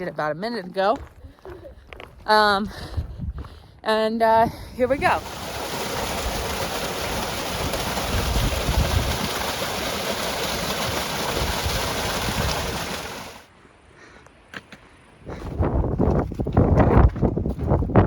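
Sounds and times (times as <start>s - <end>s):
wind buffeting microphone: 2.2s - 3.8s, 4.4s - 13.4s, 15.2s - 18.0s.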